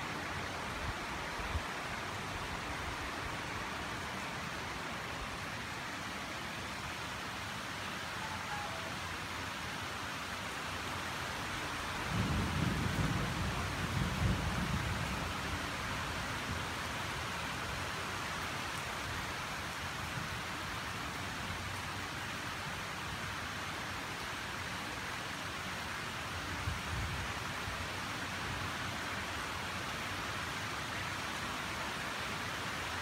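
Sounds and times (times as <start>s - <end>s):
rain falling: 0.0s - 33.0s
thunder rumble: 12.0s - 15.5s.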